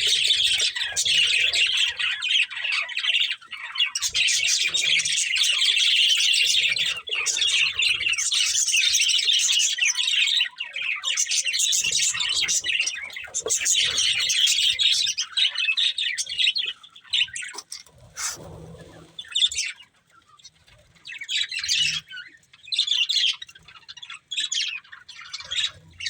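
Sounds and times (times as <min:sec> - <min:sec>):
budgerigars chirping: 0:00.0 - 0:19.8.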